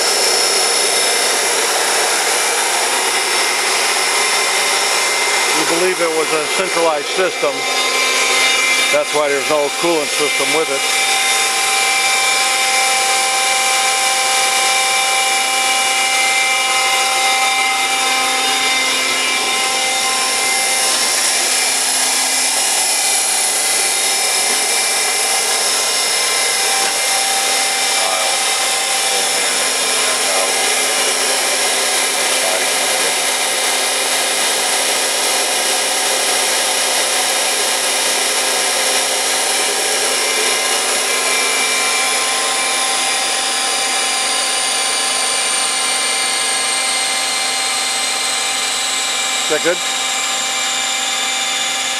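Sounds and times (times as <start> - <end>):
grinder machine whine: 0.0 - 51.9.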